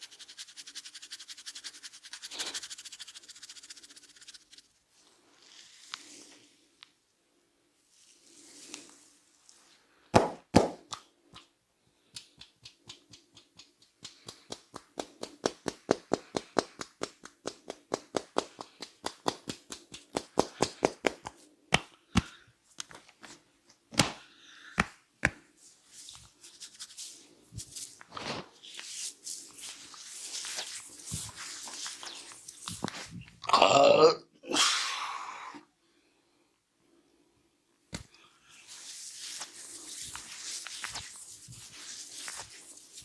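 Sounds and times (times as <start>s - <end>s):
hands slapping head: 10.2s - 25.4s.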